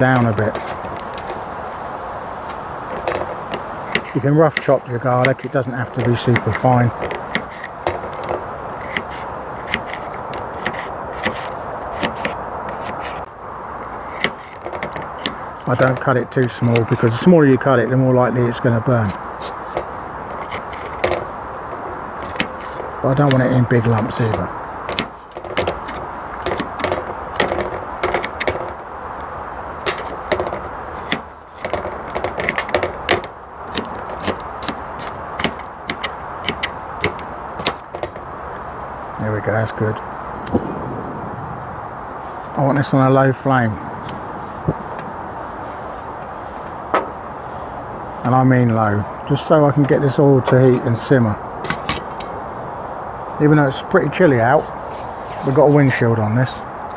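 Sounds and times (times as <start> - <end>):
steady background hiss: 0.0 - 56.9
knife chopping on wooden board: 3.5 - 13.3
knife chopping on board: 8.8 - 13.3.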